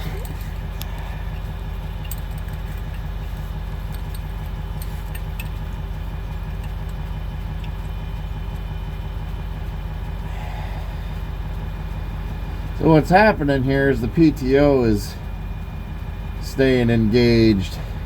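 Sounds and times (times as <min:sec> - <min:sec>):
diesel truck engine idling: 0:00.0 - 0:18.0
metallic clicks of tools: 0:00.2 - 0:03.0.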